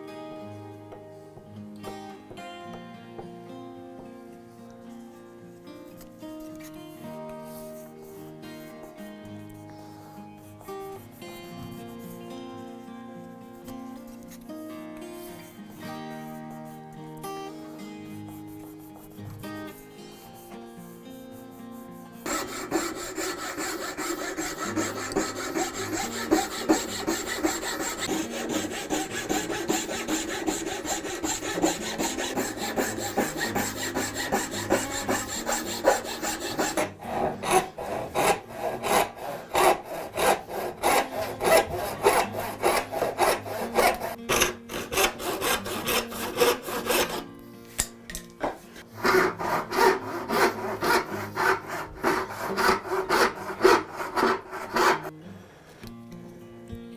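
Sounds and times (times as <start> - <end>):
hand saw cutting hardwood: 10.4 - 12.3, 15.0 - 47.3, 48.4 - 55.1.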